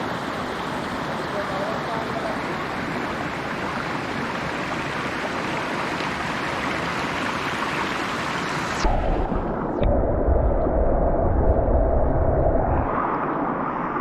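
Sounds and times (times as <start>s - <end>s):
stream water rushing: 0.0s - 8.9s
low rumble: 8.8s - 14.0s.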